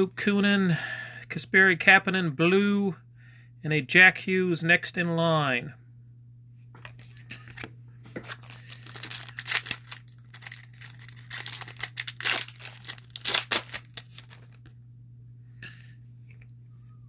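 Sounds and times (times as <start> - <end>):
low steady hum: 0.0 - 17.0
wrapper tearing and crinkling: 8.2 - 14.7.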